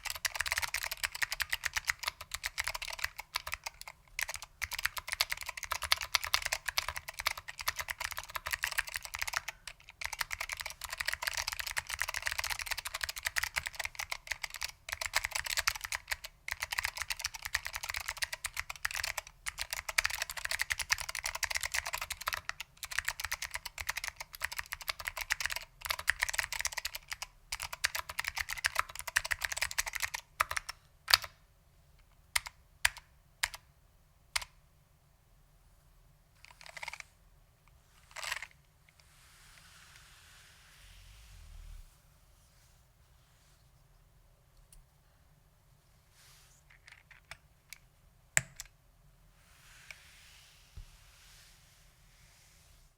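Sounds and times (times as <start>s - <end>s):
typing on clicky mechanical keyboard: 0.0s - 31.4s, 32.3s - 33.6s, 36.4s - 37.0s.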